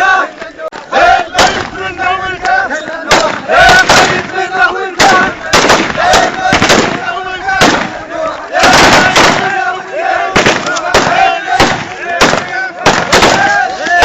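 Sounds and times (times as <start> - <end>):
crowd of men chanting: 0.0 - 14.0
sharp bangs: 1.3 - 2.0, 3.1 - 13.7.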